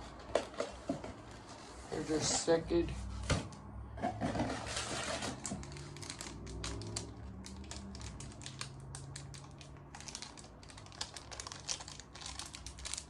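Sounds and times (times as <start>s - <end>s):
plastic parts clicking and crackling: 5.0s - 13.0s.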